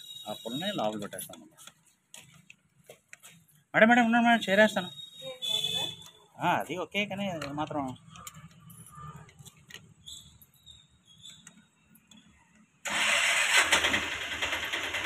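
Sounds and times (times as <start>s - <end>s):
scooter engine starting and running: 12.8s - 15.0s.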